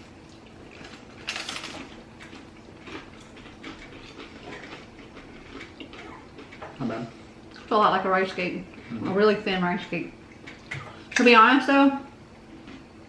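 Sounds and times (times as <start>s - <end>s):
crunching corn cakes: 0.4s - 6.6s.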